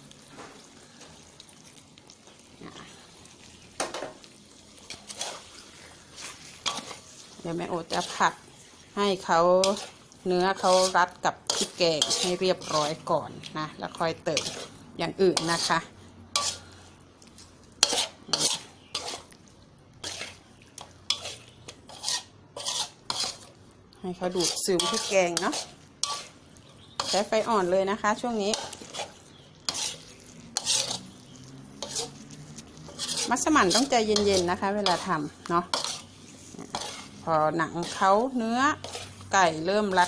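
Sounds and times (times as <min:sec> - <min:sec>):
chicken sizzling in a pan: 0:00.0 - 0:40.0
utensil scraping against a pot: 0:00.2 - 0:40.0.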